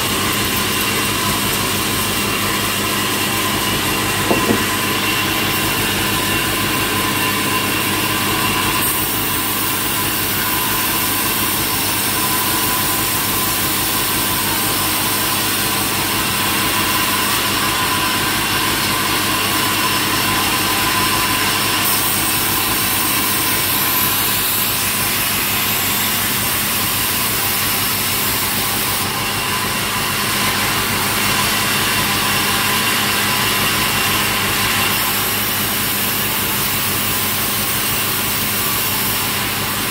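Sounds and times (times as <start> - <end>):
sawmill saw droning: 0.0 - 39.9.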